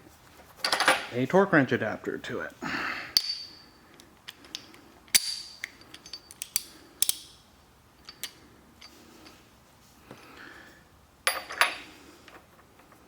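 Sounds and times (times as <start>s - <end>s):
metal tool parts clinking: 3.2s - 3.7s, 4.3s - 7.4s.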